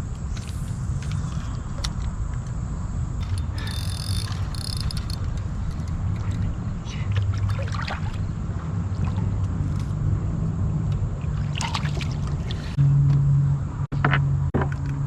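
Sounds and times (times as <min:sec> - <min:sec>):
steady low rumble: 0:00.0 - 0:13.9
water trickling and gurgling: 0:03.2 - 0:09.6, 0:11.1 - 0:12.8.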